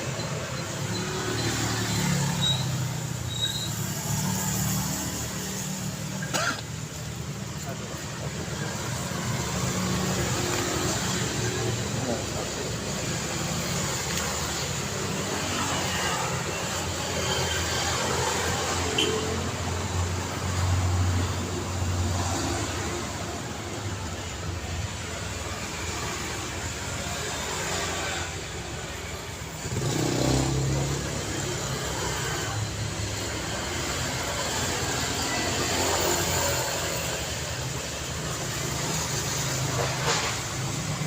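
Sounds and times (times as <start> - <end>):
cars driving past: 0.0 - 41.0
loud vehicle passing: 29.0 - 37.5.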